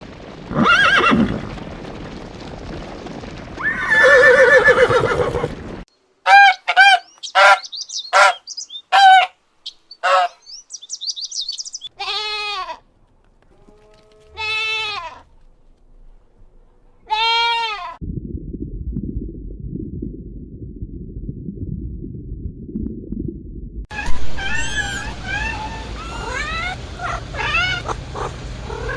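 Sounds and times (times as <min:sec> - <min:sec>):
long rising and falling calls: 0:06.3 - 0:11.9
farm animal calls: 0:06.3 - 0:12.8
high chirping: 0:06.9 - 0:11.9.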